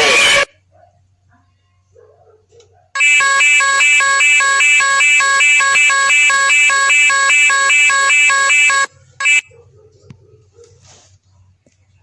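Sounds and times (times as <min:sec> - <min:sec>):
electronic alarm tone: 0:03.0 - 0:09.4.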